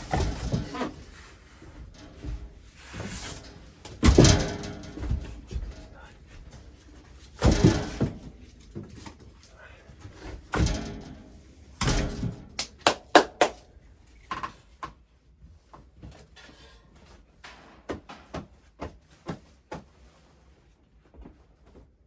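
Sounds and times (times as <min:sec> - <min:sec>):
heavy thuds: 0:00.0 - 0:09.1, 0:10.0 - 0:12.9.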